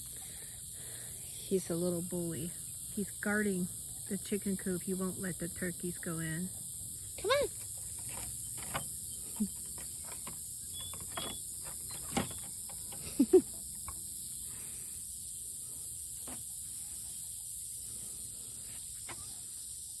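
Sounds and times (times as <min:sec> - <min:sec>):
insects chirping: 0:00.0 - 0:20.0.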